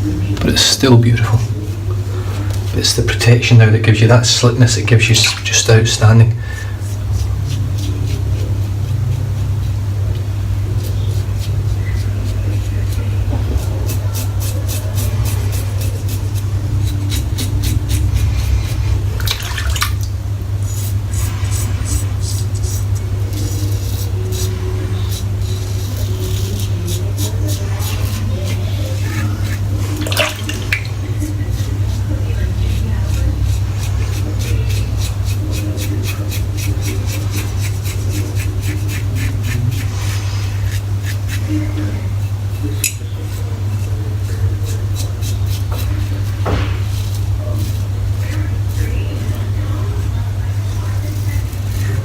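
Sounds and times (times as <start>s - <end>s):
steady low hum: 0.0s - 52.0s
razor scraping stubble: 1.2s - 19.2s, 20.6s - 52.0s
water rinsing: 17.4s - 20.3s, 27.7s - 31.9s.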